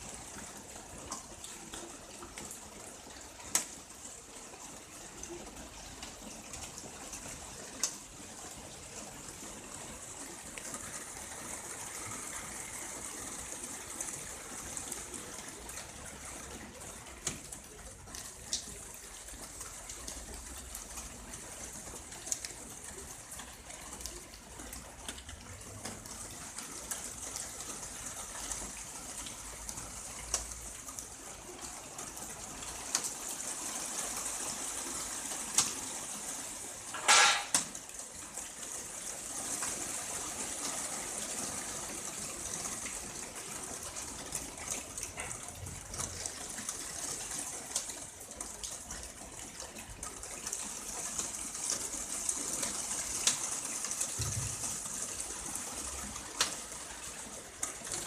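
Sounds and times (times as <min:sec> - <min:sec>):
fine rain hissing: 0:25.6 - 0:58.0.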